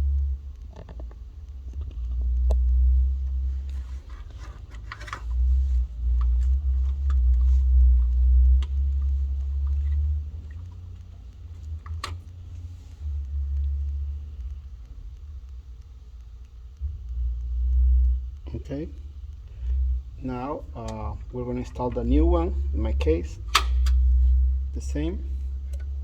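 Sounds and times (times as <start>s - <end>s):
plastic clicks and scrapes: 3.6s - 12.4s.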